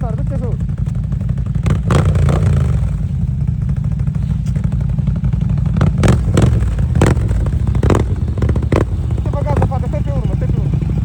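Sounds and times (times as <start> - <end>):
atv engine running: 0.0 - 11.0.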